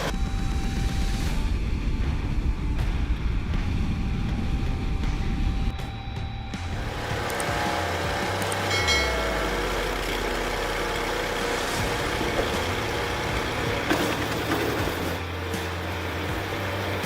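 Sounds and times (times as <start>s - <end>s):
wood grinding machine running: 6.7s - 17.0s.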